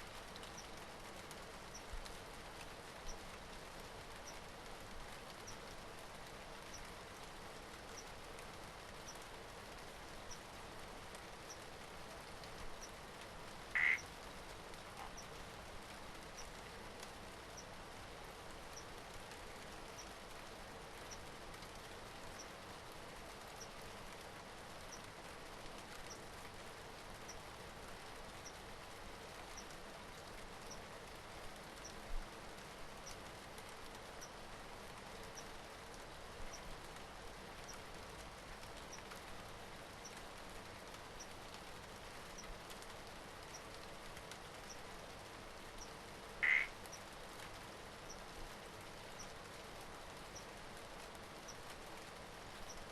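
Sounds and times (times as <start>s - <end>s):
steady rain falling: 0.0s - 52.9s
loud animal call: 13.8s - 14.0s, 46.4s - 46.7s.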